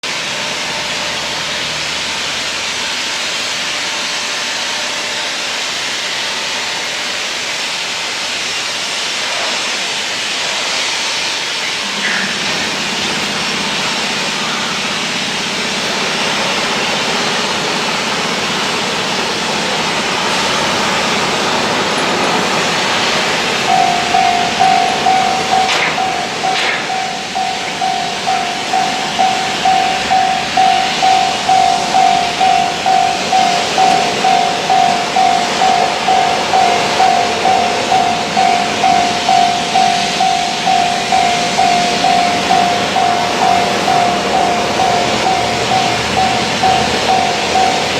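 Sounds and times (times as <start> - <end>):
level-crossing warning bell: 0.0 - 47.9
rushing background noise: 10.2 - 47.9
low engine drone: 11.6 - 47.9.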